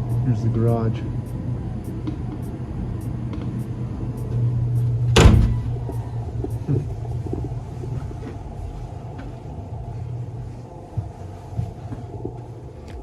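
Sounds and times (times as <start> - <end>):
steady low hum: 0.0 - 13.0
loud knock: 5.2 - 5.9.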